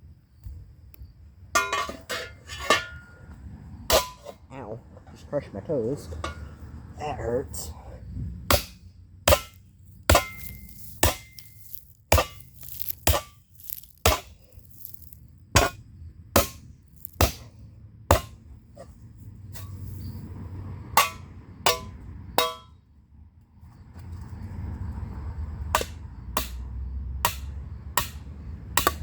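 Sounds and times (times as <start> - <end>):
hammer striking hot steel: 8.5 - 15.0, 16.4 - 17.5, 18.1 - 18.4, 21.0 - 22.7.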